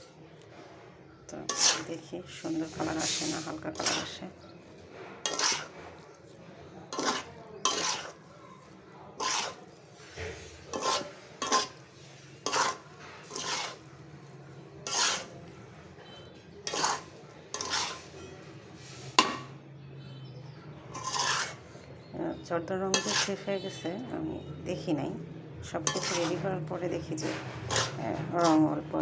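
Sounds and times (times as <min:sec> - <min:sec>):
spatula scraping rice in a pan: 0:01.4 - 0:19.5, 0:20.9 - 0:22.1, 0:22.9 - 0:23.8, 0:25.8 - 0:29.0.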